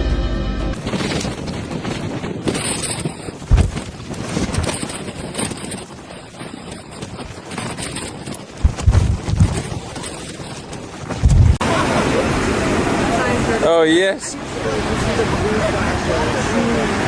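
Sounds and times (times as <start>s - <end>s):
wind buffeting microphone: 0.8s - 13.6s
sharp low thump: 11.2s - 11.6s.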